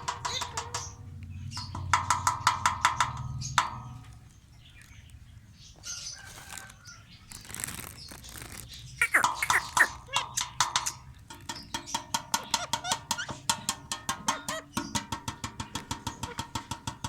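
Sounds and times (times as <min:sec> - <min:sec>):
wings rustling: 0:06.2 - 0:09.9
parrots chirping: 0:08.9 - 0:11.1.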